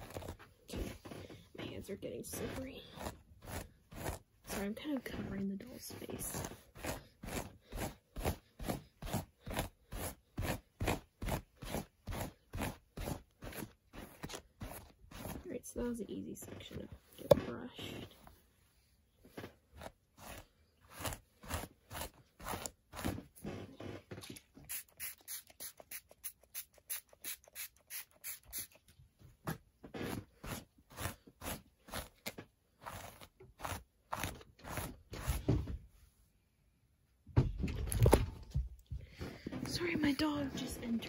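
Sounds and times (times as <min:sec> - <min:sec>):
hairbrush strokes through hair: 0:00.0 - 0:18.3, 0:24.6 - 0:28.8.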